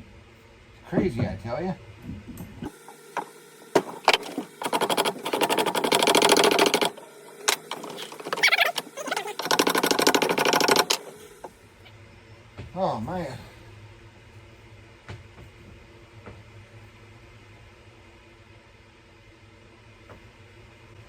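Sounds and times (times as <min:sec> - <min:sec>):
tool scraping wood: 0:03.8 - 0:11.4.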